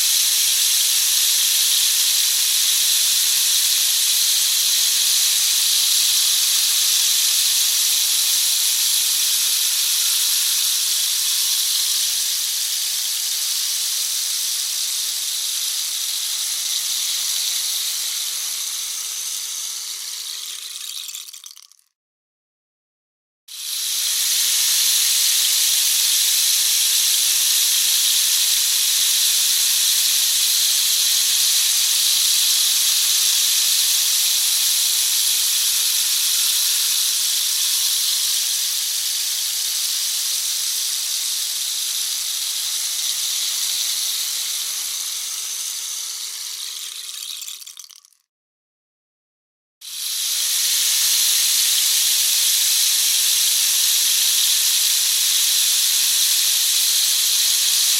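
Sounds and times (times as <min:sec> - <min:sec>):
rain stick trickling: 0:16.0 - 0:21.9, 0:41.4 - 0:48.2.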